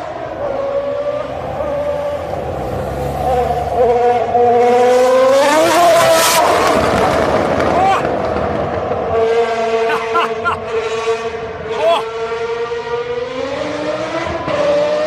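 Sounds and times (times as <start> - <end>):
high-pitched car engine: 0.0 - 15.0
loud rush of noise: 4.4 - 10.6.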